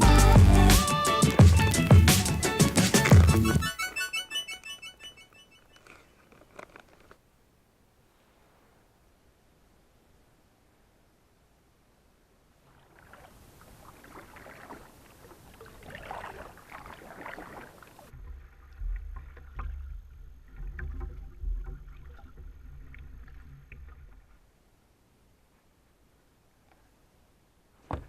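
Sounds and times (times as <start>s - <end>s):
water splashing and trickling: 12.6s - 24.5s.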